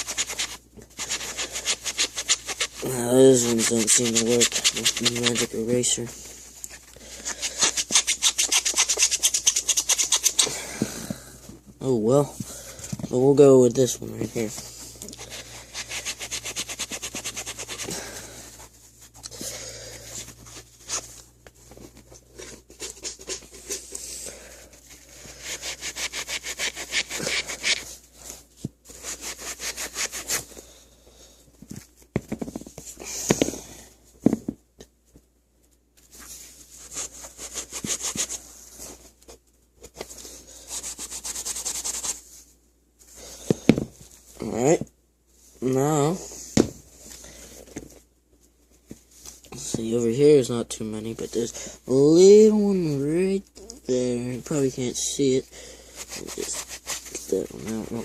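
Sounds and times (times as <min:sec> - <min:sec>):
sponge scrubbing a sneaker: 0:00.0 - 0:06.1, 0:07.2 - 0:10.6, 0:15.2 - 0:18.4, 0:25.1 - 0:27.9, 0:28.9 - 0:30.5, 0:36.8 - 0:38.5, 0:40.6 - 0:42.2, 0:56.0 - 0:58.0.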